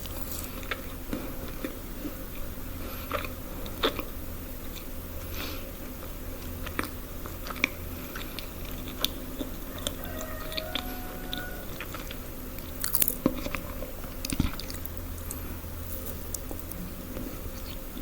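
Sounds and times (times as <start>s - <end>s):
sharp food crunches: 0.0s - 1.8s, 6.5s - 16.9s
person chewing food: 0.0s - 18.0s.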